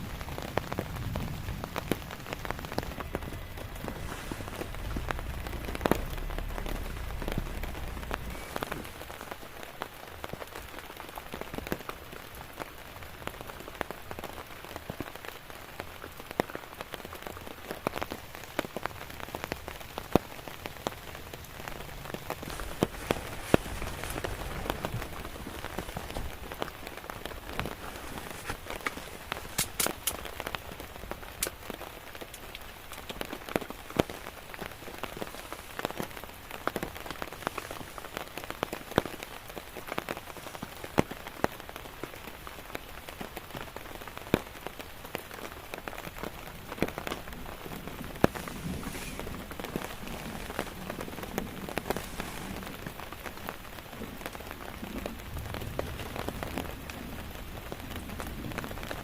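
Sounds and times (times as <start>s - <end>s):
low rumble: 0.0s - 9.9s, 19.3s - 29.6s
raindrops ticking close by: 0.0s - 59.0s
steady rain: 0.0s - 59.0s.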